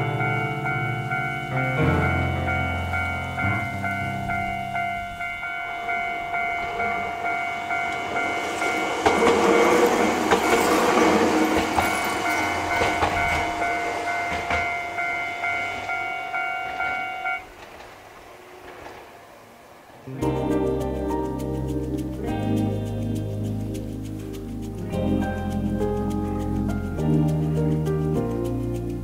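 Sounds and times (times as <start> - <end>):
level crossing warning bell: 0.0 - 17.6
train wheels clacking: 0.0 - 19.6.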